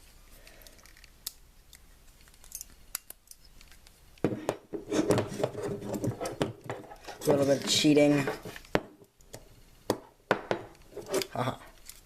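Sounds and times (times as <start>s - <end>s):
metal scraping: 4.7s - 8.6s.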